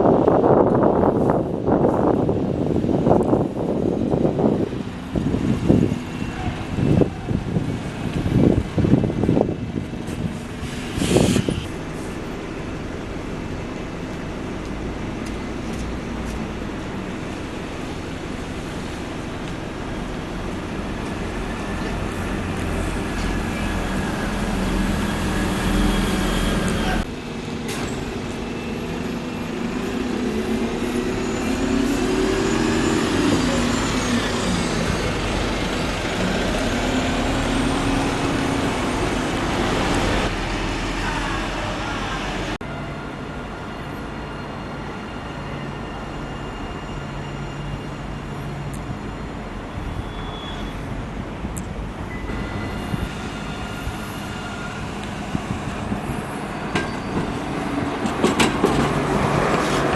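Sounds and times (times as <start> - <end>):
large vehicles passing: 0.0 - 59.9.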